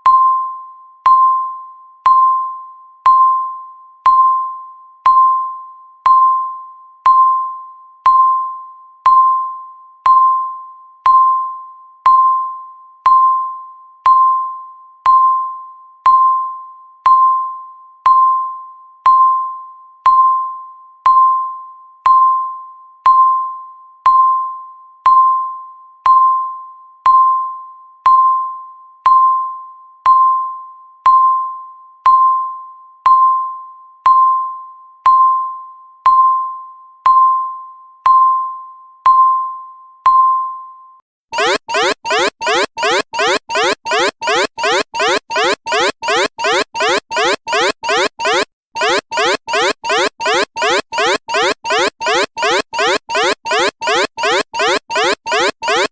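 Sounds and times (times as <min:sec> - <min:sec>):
countdown timer beeping: 0:41.4 - 0:55.9.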